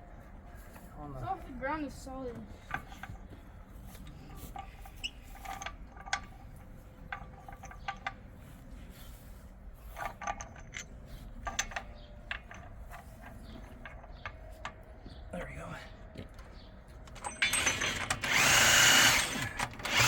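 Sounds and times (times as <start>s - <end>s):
metallic clinks and scrapes: 2.6s - 14.7s, 17.1s - 18.4s.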